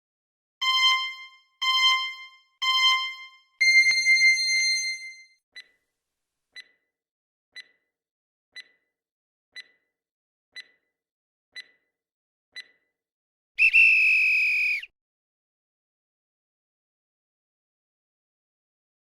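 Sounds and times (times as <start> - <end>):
long electronic beep: 0.6 - 5.3
timer ticking: 0.6 - 5.8, 6.5 - 13.0.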